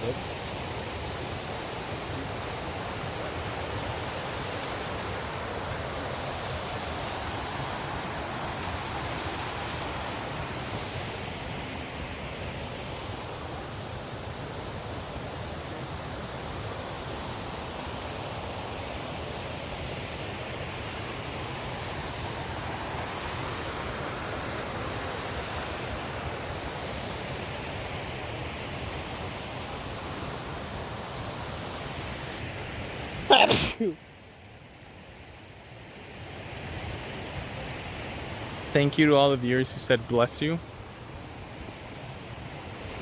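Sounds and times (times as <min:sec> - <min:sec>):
waterfall rushing: 0:00.0 - 0:32.4, 0:33.0 - 0:34.0
person sneezing: 0:33.2 - 0:34.0.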